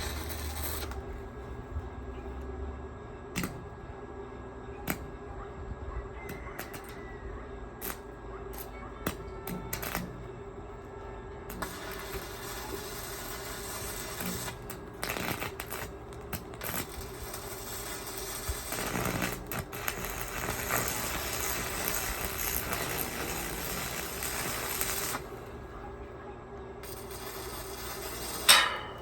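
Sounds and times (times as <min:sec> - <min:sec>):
electric arc welding crackling: 0:00.0 - 0:01.1, 0:06.6 - 0:07.0, 0:07.8 - 0:10.2, 0:11.5 - 0:25.9, 0:26.8 - 0:29.0.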